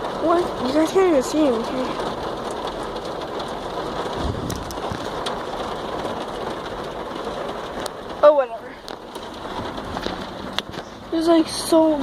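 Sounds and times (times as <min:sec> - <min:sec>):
heavy rain on vehicle roof: 0:00.0 - 0:12.0
low rumble: 0:03.9 - 0:05.7.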